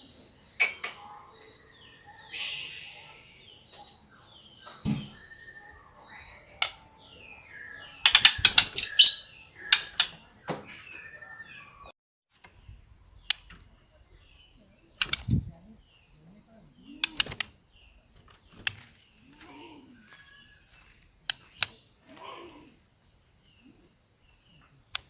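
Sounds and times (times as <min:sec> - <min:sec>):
bird singing chirps and whistles: 0:00.0 - 0:11.9
sharp clicks: 0:15.0 - 0:15.5, 0:17.0 - 0:17.6.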